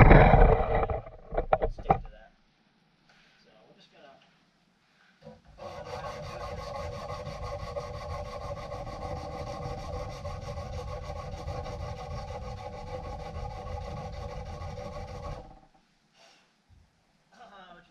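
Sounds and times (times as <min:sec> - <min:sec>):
sanding steel: 0:05.6 - 0:15.8.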